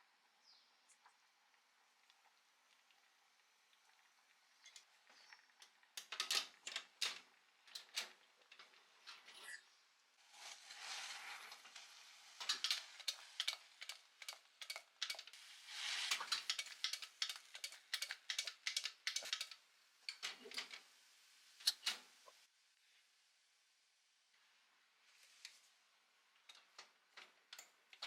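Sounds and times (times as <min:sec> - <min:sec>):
utensils and dishes clicking: 0:04.6 - 0:09.6, 0:11.5 - 0:20.8, 0:21.6 - 0:22.1
soft rustling or scraping: 0:10.2 - 0:13.4, 0:15.3 - 0:16.5.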